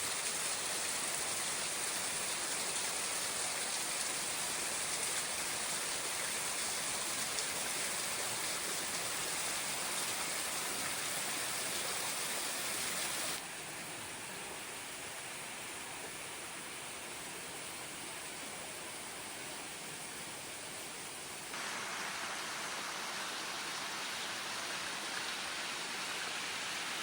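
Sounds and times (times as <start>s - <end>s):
water hissing: 0.0s - 13.4s, 21.4s - 27.0s.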